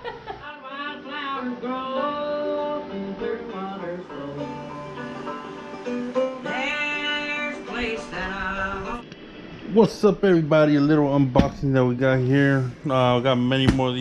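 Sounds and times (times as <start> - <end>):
acoustic guitar music: 0.7 - 9.1.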